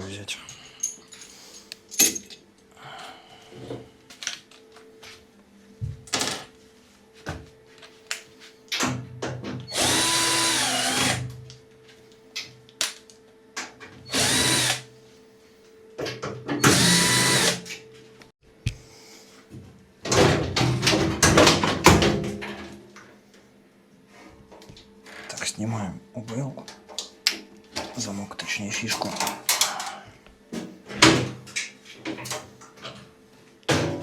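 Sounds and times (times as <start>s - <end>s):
cordless drill running: 9.7s - 11.3s, 14.1s - 14.9s, 16.6s - 17.7s.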